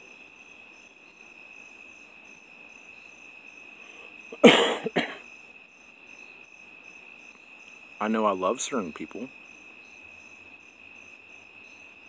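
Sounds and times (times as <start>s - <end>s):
crickets chirping: 0.0s - 12.0s
person coughing: 4.4s - 5.2s.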